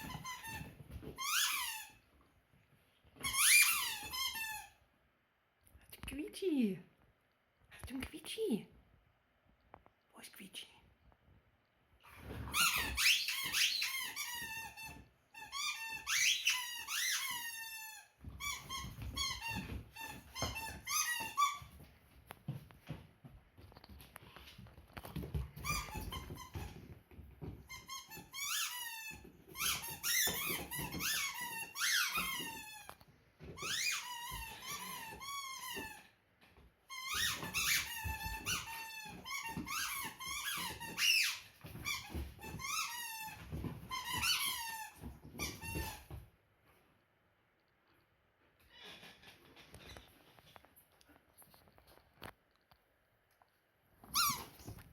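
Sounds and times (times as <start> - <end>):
rubber squeaky toy squeaking: 0.0 - 2.0, 3.2 - 4.8, 12.5 - 21.7, 25.6 - 26.8, 27.7 - 33.0, 33.6 - 36.1, 36.9 - 46.1, 54.0 - 54.8.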